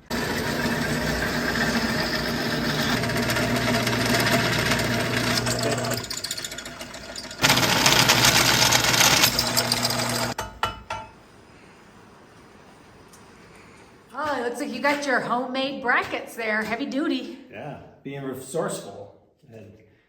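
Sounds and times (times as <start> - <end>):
electric drill boring steel: 0.0 - 10.4.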